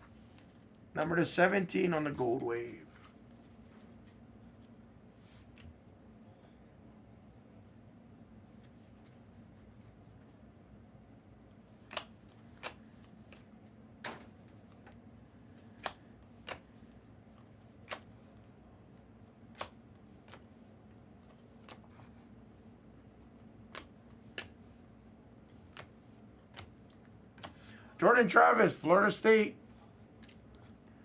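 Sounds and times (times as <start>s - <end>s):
faint steady hum: 0.0s - 31.0s
trading cards clicking and snapping: 11.8s - 13.4s, 15.6s - 18.1s, 19.5s - 20.5s, 21.2s - 21.9s, 23.2s - 24.6s, 25.5s - 27.7s.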